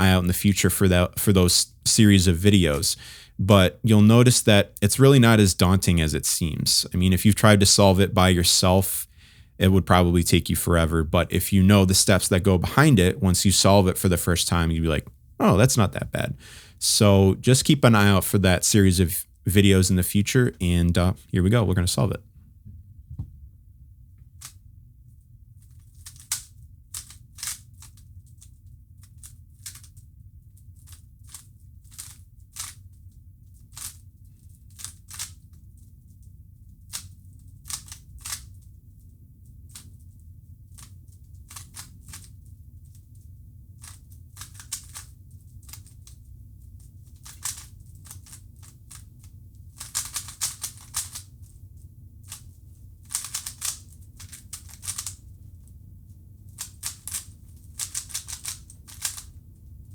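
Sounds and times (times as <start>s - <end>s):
steady low hum: 0.0s - 59.9s
puzzle cube turning clicks: 25.7s - 30.1s, 36.8s - 38.6s, 40.7s - 42.4s, 43.8s - 46.2s, 47.0s - 49.1s, 49.7s - 51.4s, 52.3s - 55.3s, 56.5s - 59.4s.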